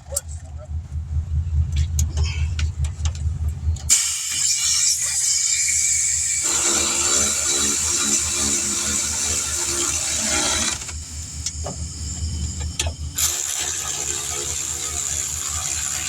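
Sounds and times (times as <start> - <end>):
vehicle engine running: 0.0 - 4.4, 8.5 - 16.0.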